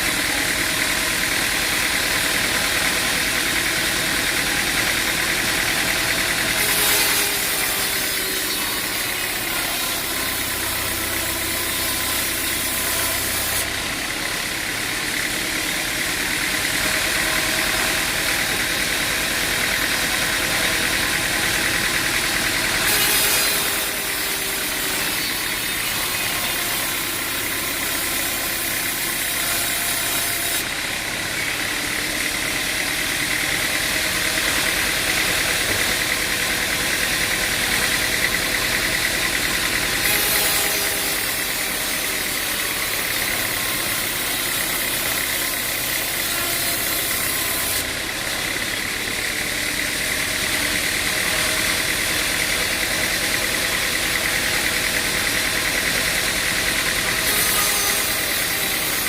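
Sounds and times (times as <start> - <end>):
machine engine running: 0.0 - 59.0.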